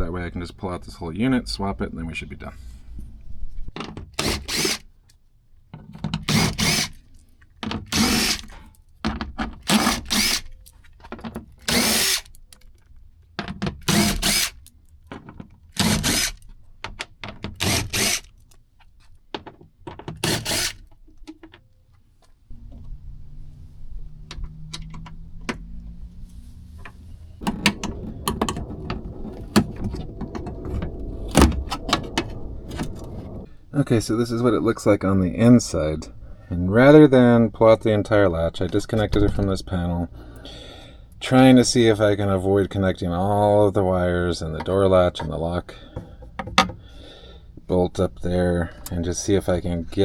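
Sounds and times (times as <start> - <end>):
cordless drill running: 4.2 - 4.8, 6.3 - 6.9, 8.0 - 8.4, 9.7 - 10.4
low hum: 22.5 - 36.8.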